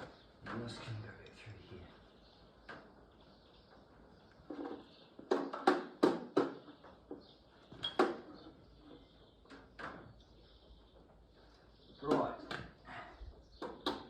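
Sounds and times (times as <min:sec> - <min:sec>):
sharp knocks on tractor parts: 0:05.2 - 0:06.7.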